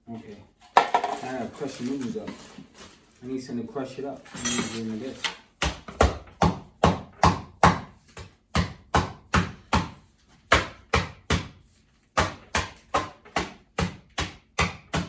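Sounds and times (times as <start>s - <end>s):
dry noodles in bag being pounded: 0.8s - 2.9s.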